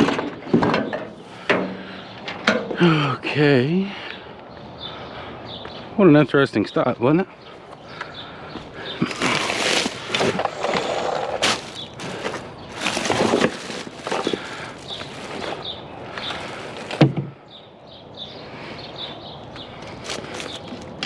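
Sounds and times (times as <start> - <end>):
scrap items rustling and clattering: 9.0 - 17.2.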